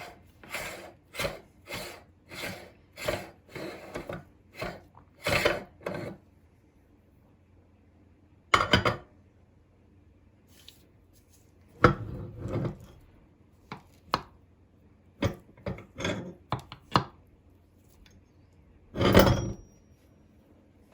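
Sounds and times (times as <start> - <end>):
meat grinder crunching ice cream: 0.0 - 5.8.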